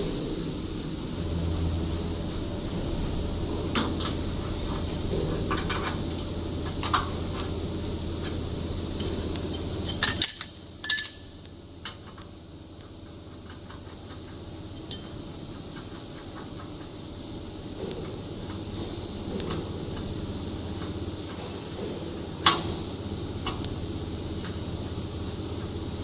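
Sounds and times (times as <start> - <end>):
steady machine hum: 0.0 - 26.0
metal parts clinking: 9.8 - 11.7.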